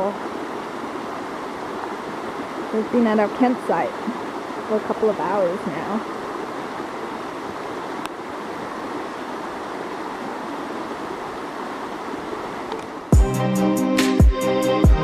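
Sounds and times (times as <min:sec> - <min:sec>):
river rushing: 0:00.0 - 0:13.2
music with deep drum beat: 0:13.2 - 0:15.0.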